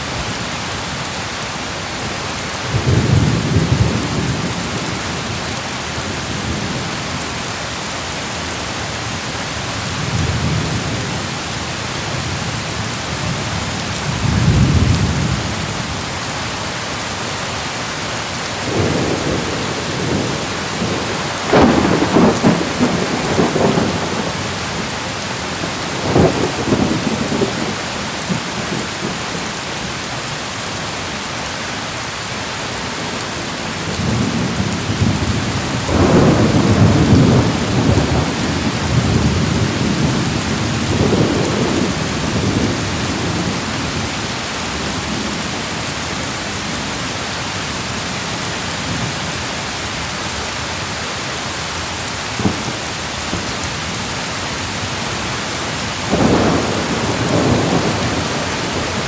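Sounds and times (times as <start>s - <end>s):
steady rain falling: 0.0s - 59.0s
thunder claps and rumbles: 18.6s - 29.6s, 33.4s - 46.8s, 52.2s - 59.0s.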